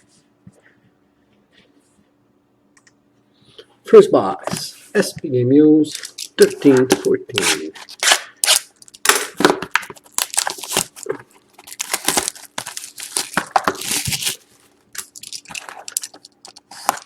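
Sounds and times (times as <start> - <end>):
plastic shrink-wrap tearing and crinkling: 5.9 - 17.0.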